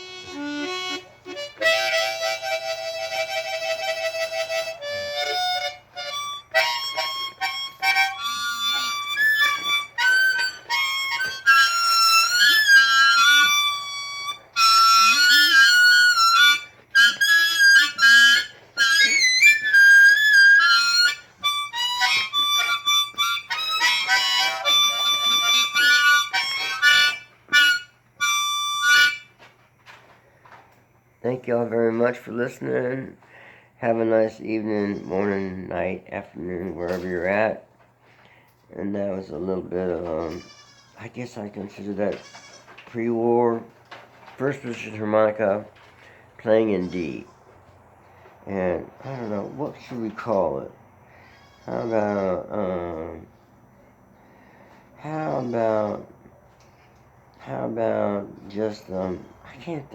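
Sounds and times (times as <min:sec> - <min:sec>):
blues harmonica playing: 0:00.0 - 0:29.4, 0:39.9 - 0:41.0.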